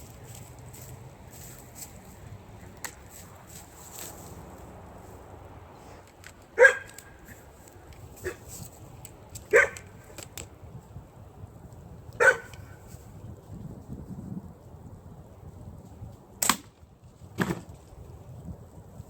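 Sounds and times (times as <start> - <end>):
dog barking: 6.6 - 7.0, 8.2 - 8.4, 9.5 - 9.9, 12.2 - 12.6.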